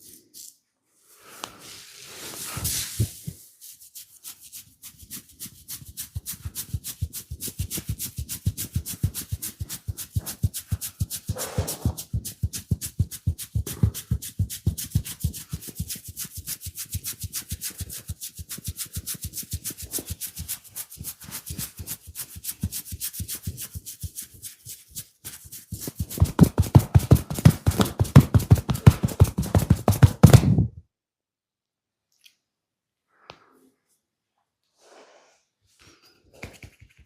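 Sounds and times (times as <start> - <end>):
percussive massage tapping: 6.2 - 20.0, 25.7 - 30.8.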